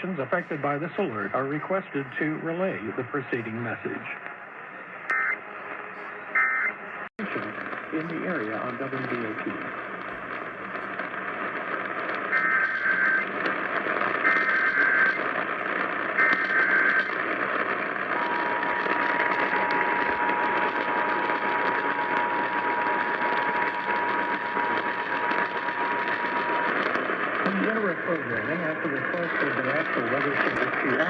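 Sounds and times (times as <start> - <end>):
radio hiss: 0.0 - 31.0
digital data bursts: 12.3 - 13.4, 14.2 - 15.4, 16.1 - 17.3.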